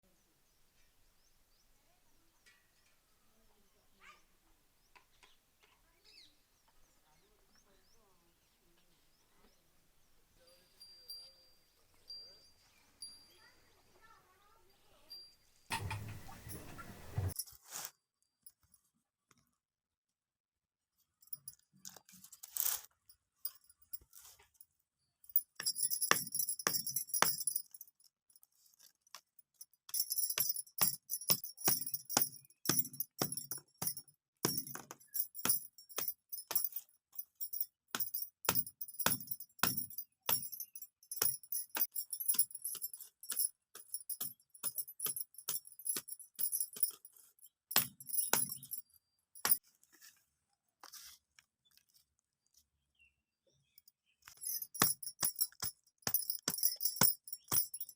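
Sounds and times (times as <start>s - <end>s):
metallic jingling and clinking: 15.0s - 17.6s, 21.2s - 49.6s, 53.8s - 57.9s.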